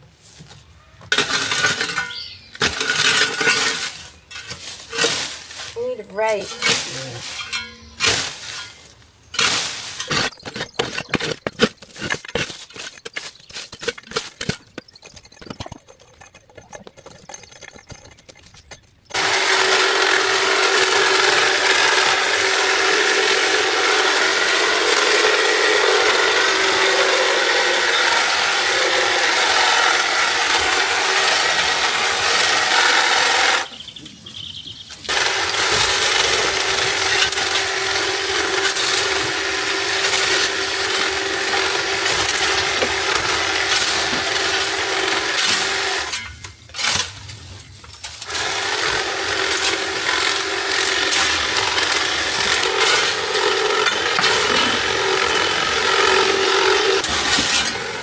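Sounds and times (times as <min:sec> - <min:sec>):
debris clinking and scraping: 0:01.1 - 0:58.0
machine humming: 0:48.4 - 0:58.0.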